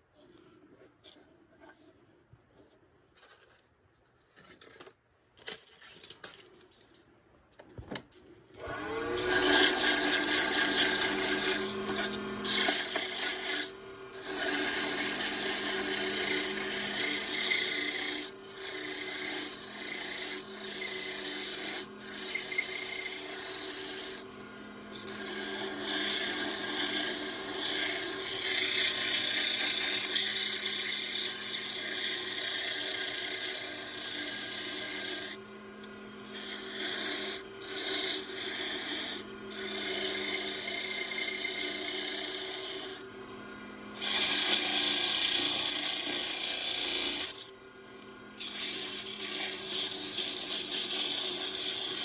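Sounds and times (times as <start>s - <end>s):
turning tool cutting wood hiss: 8.6s - 35.4s, 36.2s - 43.0s, 43.9s - 47.5s, 48.4s - 52.0s
wood lathe humming: 8.6s - 52.0s.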